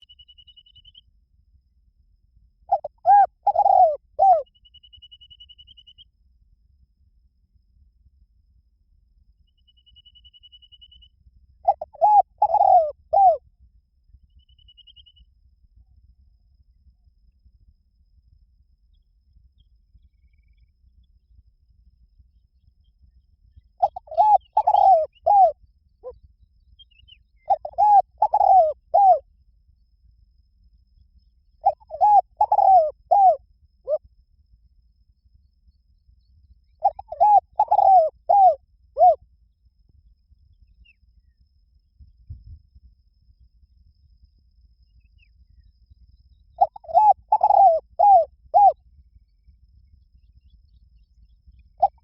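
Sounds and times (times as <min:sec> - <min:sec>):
dove cooing: 0:02.7 - 0:04.5, 0:11.6 - 0:13.4, 0:23.8 - 0:26.2, 0:27.5 - 0:29.2, 0:31.6 - 0:34.0, 0:36.8 - 0:39.2, 0:46.6 - 0:48.8, 0:51.8 - 0:52.0.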